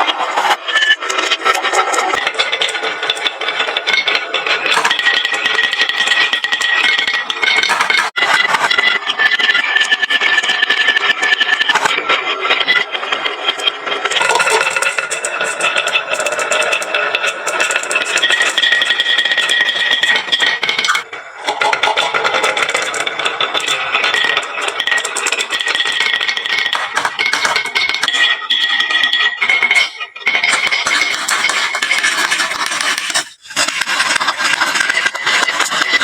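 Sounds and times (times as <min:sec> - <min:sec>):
marbles rattling down wooden run: 0:14.0 - 0:36.0.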